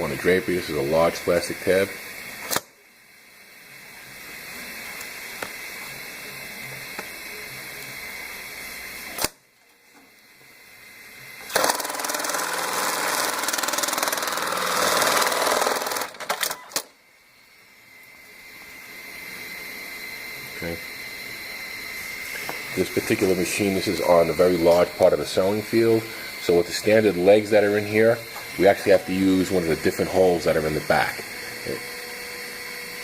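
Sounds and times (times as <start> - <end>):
fast sewing machine stitching: 11.5 - 16.6.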